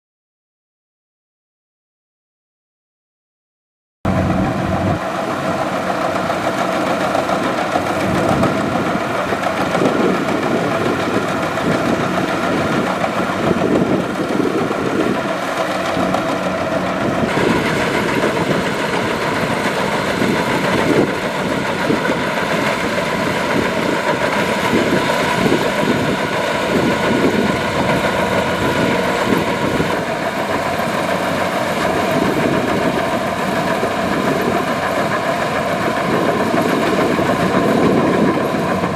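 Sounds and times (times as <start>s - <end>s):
combine harvester diesel engine: 4.1s - 38.9s.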